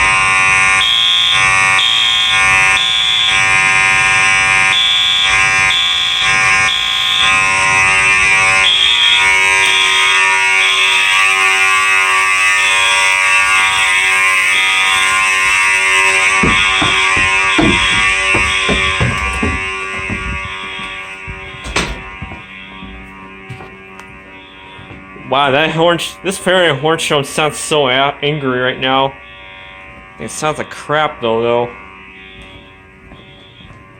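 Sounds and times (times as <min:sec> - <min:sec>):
electronic horn pulsing beeps: 0:00.0 - 0:26.8, 0:28.9 - 0:33.9
fire alarm horn buzzing: 0:00.0 - 0:33.9
knocks: 0:15.1 - 0:22.5.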